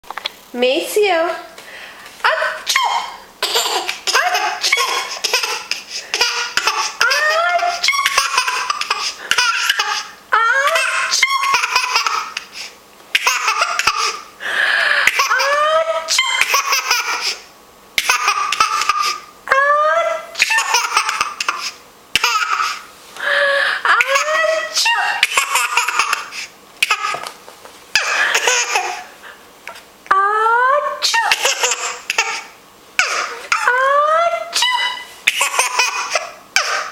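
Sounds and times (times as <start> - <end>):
child laughing: 2.2 - 12.5, 13.1 - 14.2, 15.0 - 17.4, 18.0 - 22.8, 23.8 - 27.3, 28.0 - 29.2, 30.2 - 36.9.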